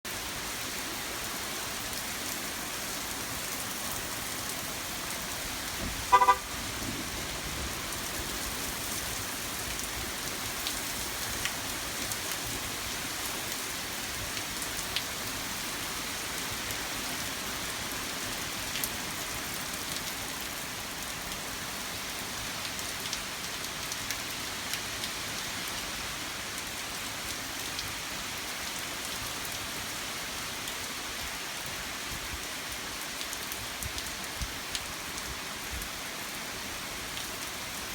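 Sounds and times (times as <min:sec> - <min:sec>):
rain falling: 0:00.1 - 0:37.9
car horn toot: 0:06.1 - 0:06.5.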